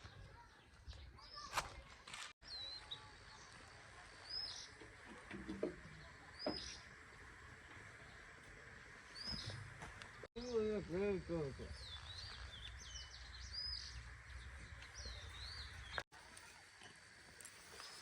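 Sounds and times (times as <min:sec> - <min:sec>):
faint outdoor ambience: 0:00.0 - 0:18.0
bird chirping: 0:09.0 - 0:16.0.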